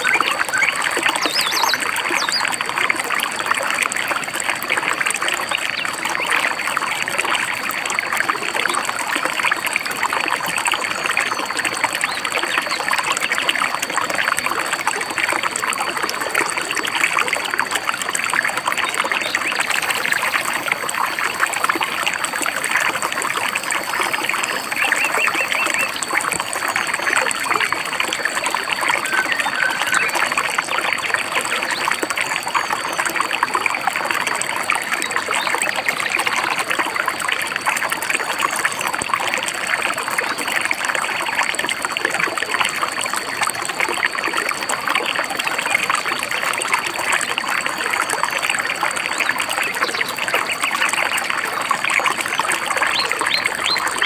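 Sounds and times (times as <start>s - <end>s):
faint bird chirps: 0.0s - 2.6s, 23.6s - 30.7s
stream babbling over stones: 0.0s - 54.0s.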